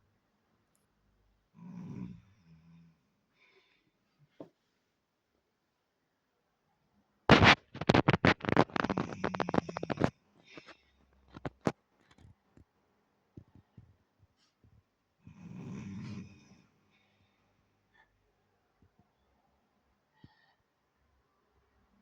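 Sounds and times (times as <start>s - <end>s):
soft breath: 3.3s - 5.0s, 20.1s - 20.7s
man snoring loudly: 15.3s - 16.4s.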